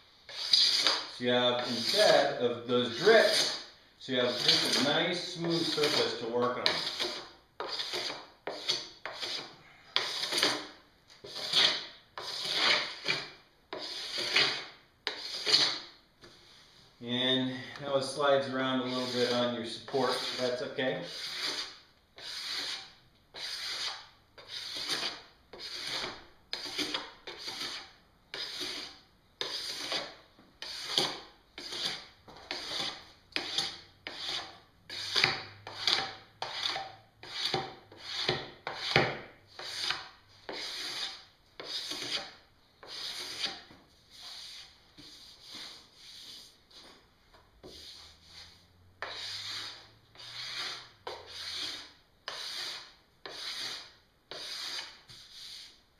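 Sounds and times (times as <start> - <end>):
steel scraper rasping on snowboard: 0.3 - 15.9, 18.8 - 46.5, 47.6 - 55.8.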